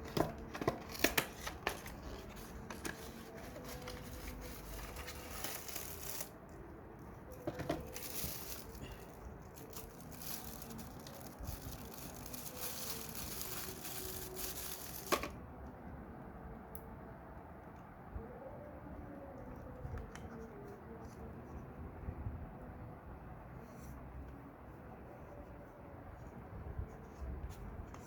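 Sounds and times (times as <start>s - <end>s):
packaging crinkling and tearing: 0.0s - 6.4s, 7.3s - 15.4s.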